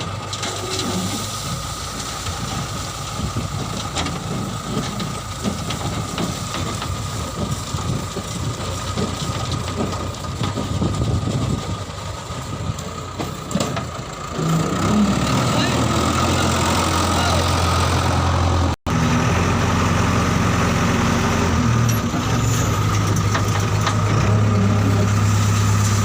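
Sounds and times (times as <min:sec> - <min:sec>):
diesel machinery running: 0:00.0 - 0:26.0
rattling and knocking: 0:03.2 - 0:14.0, 0:22.0 - 0:25.2.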